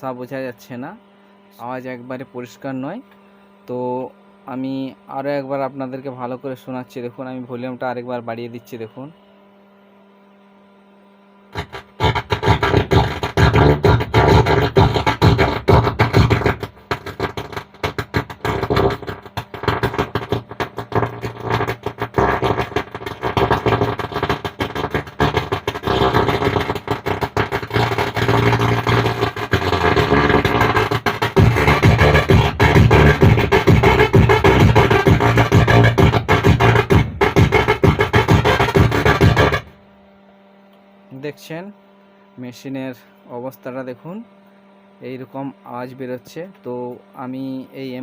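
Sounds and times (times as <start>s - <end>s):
faint amplifier hum: 0.0s - 48.0s
distorted music through speaker: 10.4s - 39.8s.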